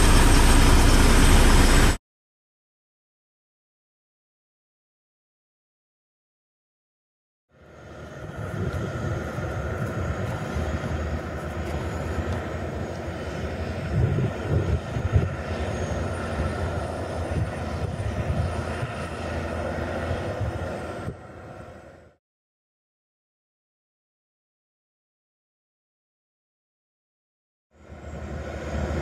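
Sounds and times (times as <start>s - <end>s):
diesel machinery engine rumble: 0.0s - 2.0s, 7.6s - 22.1s
steady machine whine: 0.0s - 2.0s, 7.5s - 22.2s, 27.8s - 29.0s.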